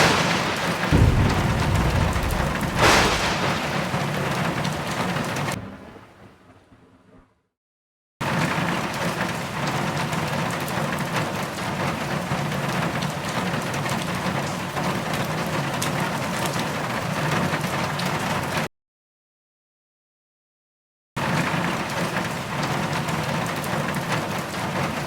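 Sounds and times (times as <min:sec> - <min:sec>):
heavy rain pattering: 0:00.0 - 0:05.6.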